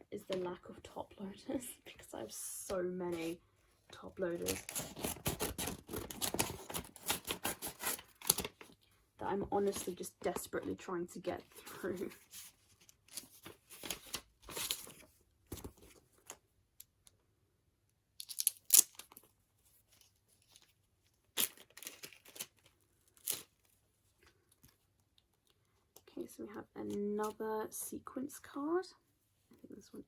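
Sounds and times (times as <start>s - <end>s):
plastic packaging tearing and crinkling: 21.3s - 23.7s.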